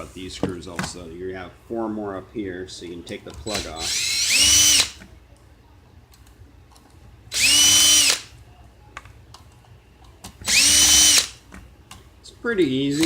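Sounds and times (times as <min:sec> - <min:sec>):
drill-driver motor whine: 0:03.8 - 0:05.0, 0:07.3 - 0:08.2, 0:10.4 - 0:11.4.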